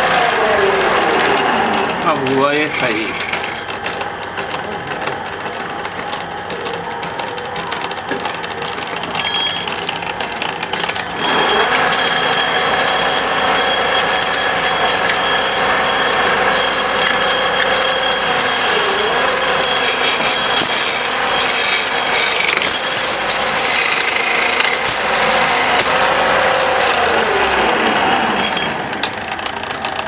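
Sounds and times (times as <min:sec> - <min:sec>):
wood lathe whine: 0:00.0 - 0:30.0
turning tool scraping wood: 0:09.8 - 0:30.0.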